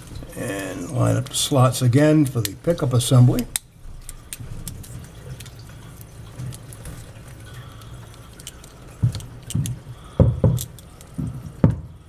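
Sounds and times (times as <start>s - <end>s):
small metal parts clicking: 3.5s - 9.8s, 10.6s - 11.2s.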